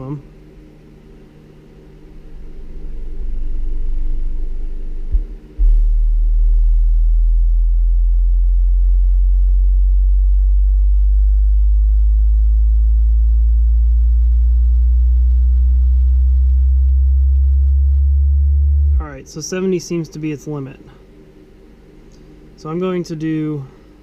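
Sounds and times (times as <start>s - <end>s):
deep sine test tone: 0.0s - 24.0s
higher test tone: 14.9s - 19.5s.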